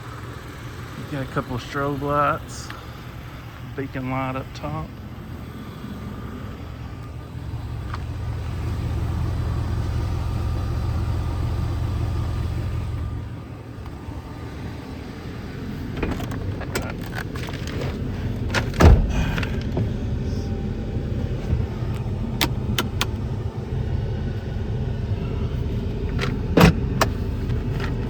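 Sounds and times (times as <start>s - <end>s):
truck engine running: 0.0s - 28.0s
clicks and knocks from handling cab: 15.8s - 20.0s, 21.3s - 23.4s, 25.9s - 28.0s
heavy thump: 18.6s - 20.0s.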